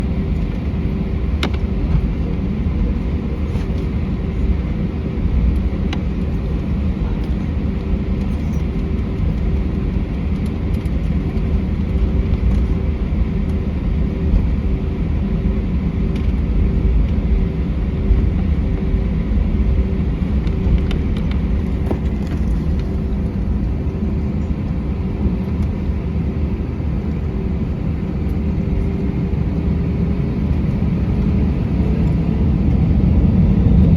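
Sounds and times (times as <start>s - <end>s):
airliner cabin rumble: 0.0s - 33.9s
constant hum: 0.0s - 33.9s.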